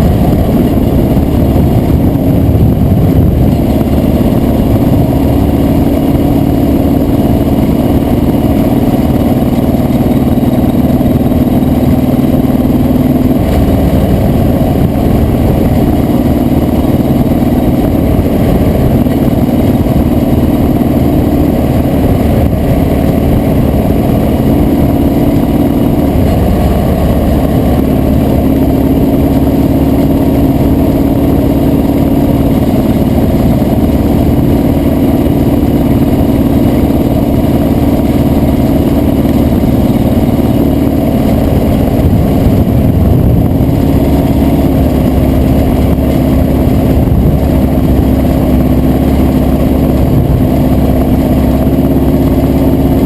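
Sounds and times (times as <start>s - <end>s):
motorcycle engine running: 0.0s - 53.0s.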